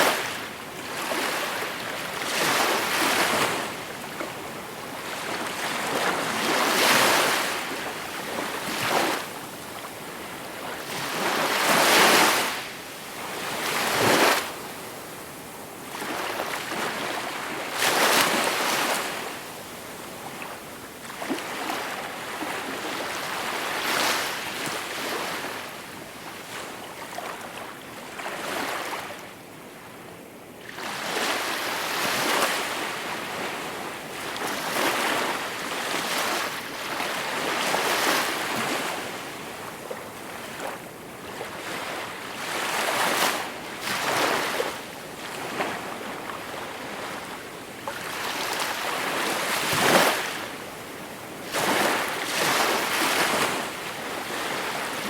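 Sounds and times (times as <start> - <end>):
sea waves breaking on shore: 40.4 - 55.0.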